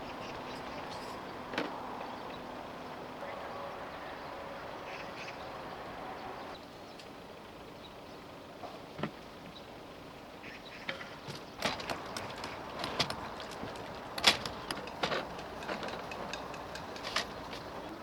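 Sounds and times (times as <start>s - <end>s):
knocks and clicks of handling: 10.9s - 17.8s.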